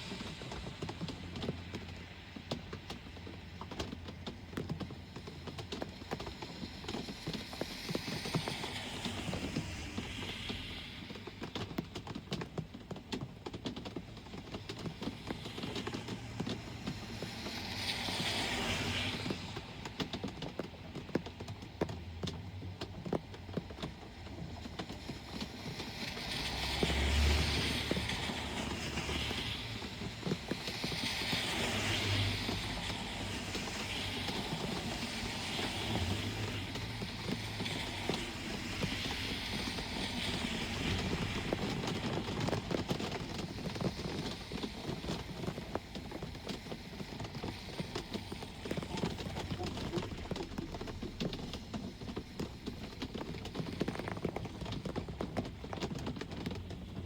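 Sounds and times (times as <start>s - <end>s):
rain pattering and dripping: 0.0s - 57.0s
tyres hissing on wet road: 0.0s - 57.0s
low engine rumble: 21.7s - 57.0s.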